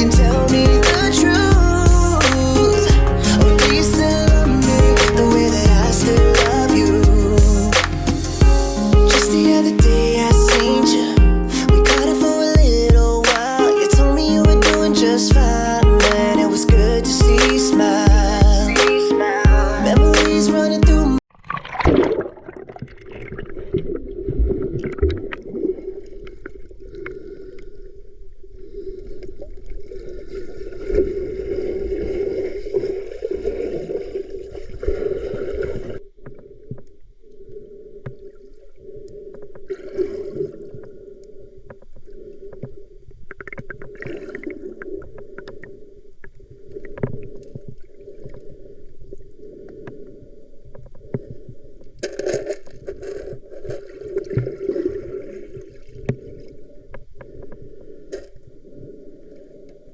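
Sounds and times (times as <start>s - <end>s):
muffled underwater stream gurgling: 21.3s - 51.9s.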